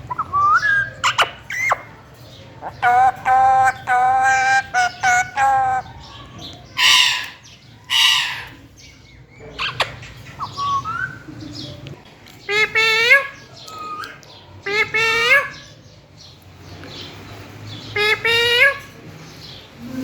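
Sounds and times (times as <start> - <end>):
parrot calling: 0.0 - 1.9, 2.6 - 8.6, 12.5 - 15.7, 17.8 - 19.0
parrot screeching: 2.7 - 6.0, 6.8 - 8.5.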